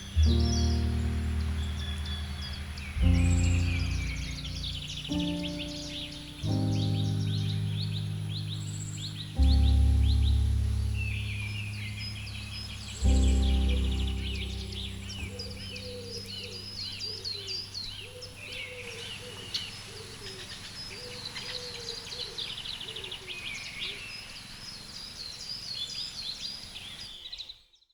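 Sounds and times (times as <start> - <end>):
low sustained music chord: 0.0 - 19.2
rapid high bird chirps: 0.0 - 19.8
lower repeated bird call: 0.0 - 22.6.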